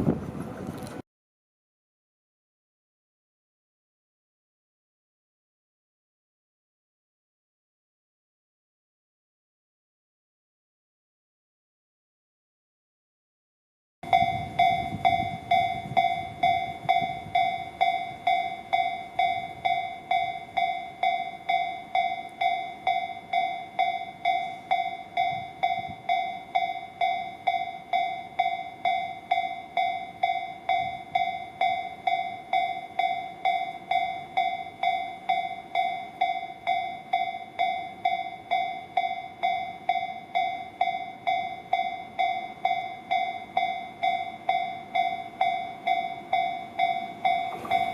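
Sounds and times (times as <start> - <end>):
level crossing warning bell: 14.0 - 47.9.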